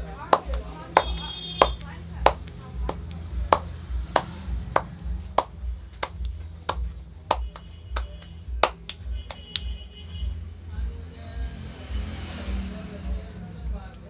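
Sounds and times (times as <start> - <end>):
background music with bass beat: 0.0 - 14.0
hands slapping in massage: 0.1 - 9.8.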